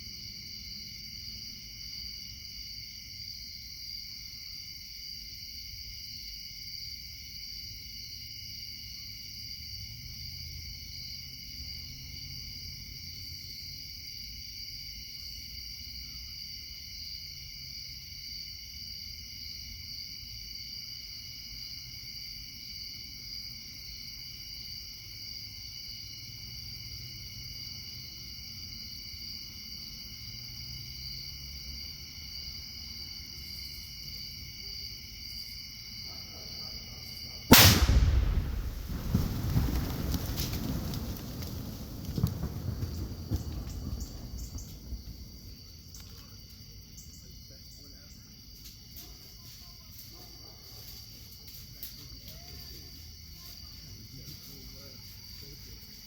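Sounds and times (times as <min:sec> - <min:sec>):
insect chorus trilling: 0:38.8 - 0:50.0.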